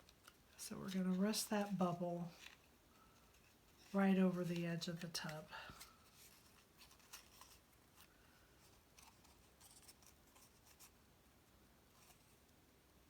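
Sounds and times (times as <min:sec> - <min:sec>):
cardstock rustling and ticking: 0:00.0 - 0:11.0.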